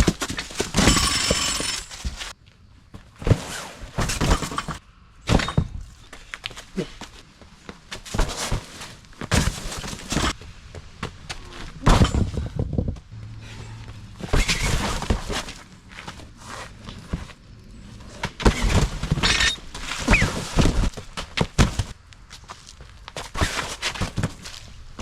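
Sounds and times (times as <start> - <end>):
sledgehammer thudding on ground: 11.8 - 12.6.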